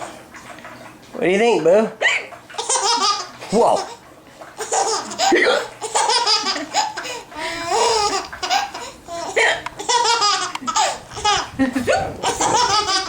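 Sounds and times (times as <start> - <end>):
young child laughing: 4.6 - 13.0
child hiccuping: 5.2 - 5.8, 9.2 - 10.0.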